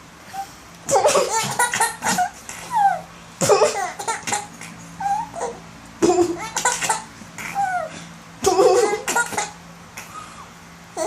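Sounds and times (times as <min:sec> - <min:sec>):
baby laughing and giggling: 0:00.9 - 0:09.6.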